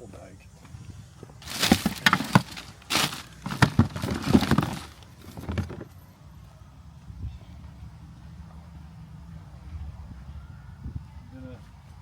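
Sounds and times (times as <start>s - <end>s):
bag rustling: 1.4s - 5.9s.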